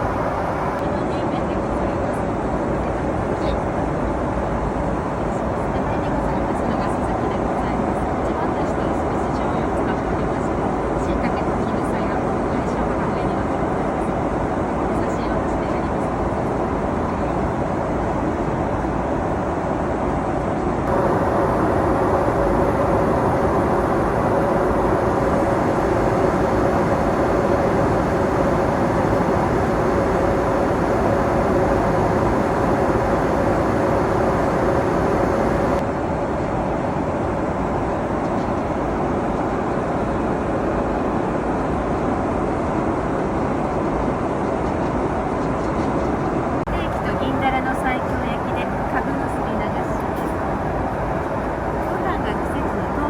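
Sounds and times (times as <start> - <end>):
steady hum: 0.0 - 0.8, 20.8 - 35.9, 46.6 - 53.0
airplane cabin noise: 0.0 - 2.3, 5.2 - 41.0, 43.4 - 53.0.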